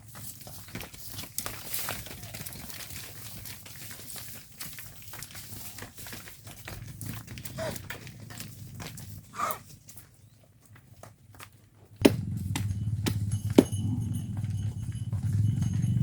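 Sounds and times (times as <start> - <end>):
rustling: 0.0 - 11.3
cattle hoof steps: 0.0 - 16.0
steady low hum: 12.0 - 16.0.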